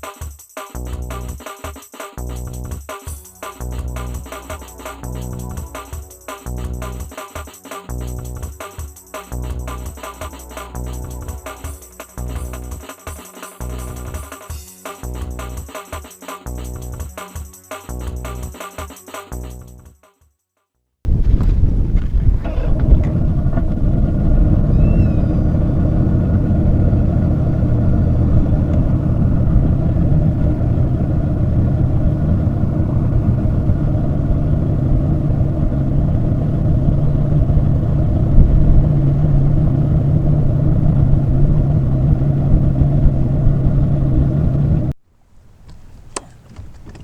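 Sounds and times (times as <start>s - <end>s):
outboard motor running: 21.1s - 44.9s.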